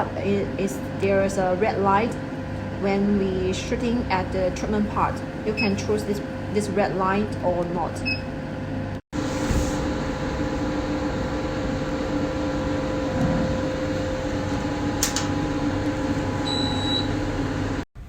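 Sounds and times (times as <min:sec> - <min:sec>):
laser machine humming: 0:09.2 - 0:17.8.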